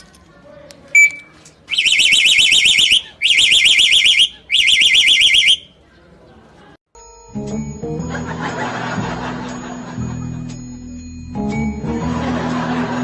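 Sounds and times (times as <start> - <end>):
high warbling alarm: 1.7 - 5.7.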